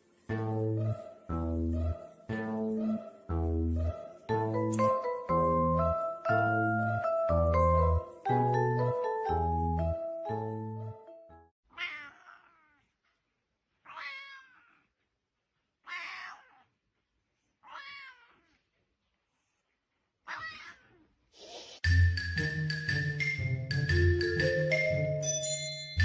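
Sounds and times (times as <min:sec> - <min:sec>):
background music: 0:00.0 - 0:11.5, 0:21.8 - 0:26.0
cat meowing: 0:11.7 - 0:12.8, 0:13.8 - 0:14.9, 0:15.8 - 0:16.7, 0:17.6 - 0:18.6, 0:20.2 - 0:21.1.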